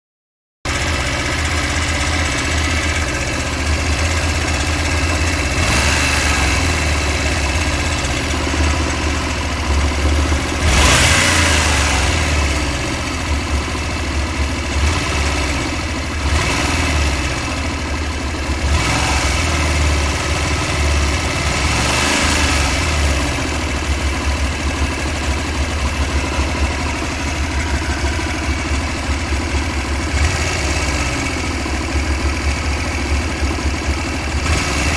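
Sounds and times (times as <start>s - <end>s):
motorcycle engine idling and revving: 0.7s - 34.9s
metallic engine knock: 23.1s - 34.3s.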